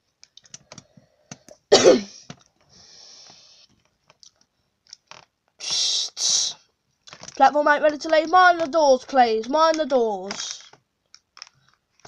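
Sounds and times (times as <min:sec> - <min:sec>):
person coughing: 0:01.7 - 0:02.3
soft hiss: 0:05.5 - 0:06.8.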